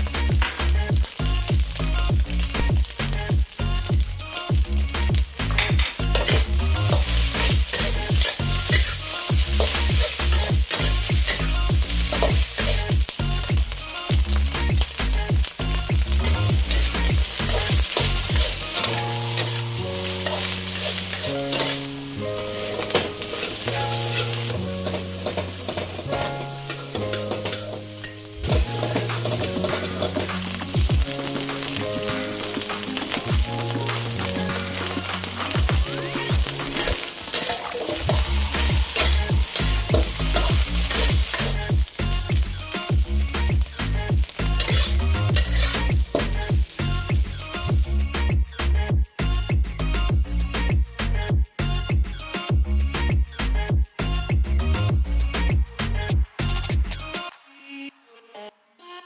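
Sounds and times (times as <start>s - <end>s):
rice sizzling in a hot pan: 0.0s - 48.0s
spatula scraping and clattering: 5.5s - 13.2s, 16.1s - 42.0s, 44.2s - 47.7s.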